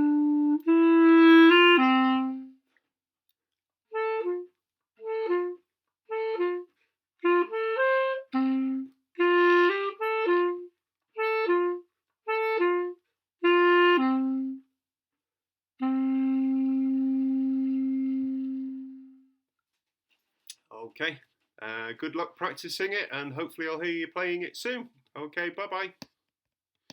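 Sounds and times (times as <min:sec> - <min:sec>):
solo clarinet playing: 0:00.0 - 0:02.6, 0:03.9 - 0:14.7, 0:15.8 - 0:19.4.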